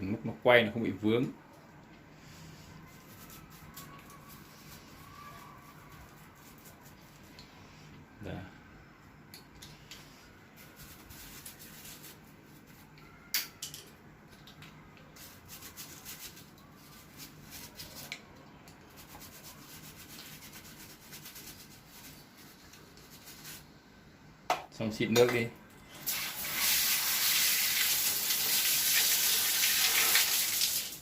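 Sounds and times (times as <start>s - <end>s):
brush scrubbing: 2.9s - 7.3s, 10.6s - 12.8s, 15.2s - 18.1s, 18.9s - 23.7s.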